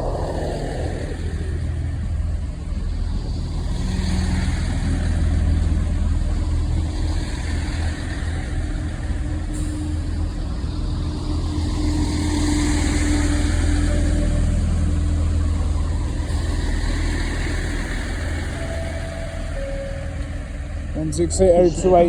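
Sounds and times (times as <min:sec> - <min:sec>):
steady hum: 0:00.0 - 0:03.5
train engines rumbling: 0:00.0 - 0:22.0.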